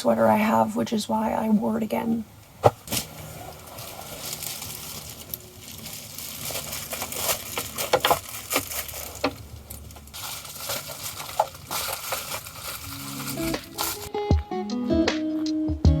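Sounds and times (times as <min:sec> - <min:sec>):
footsteps crunching on dry trail: 0:10.0 - 0:14.1.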